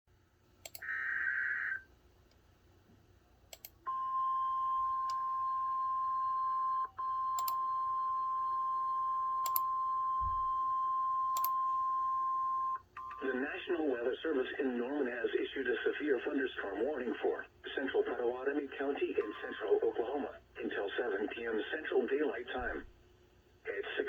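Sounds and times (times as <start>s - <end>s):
steady warning alarm tone: 3.9s - 13.4s
faint radio static: 13.1s - 23.0s, 23.6s - 24.0s.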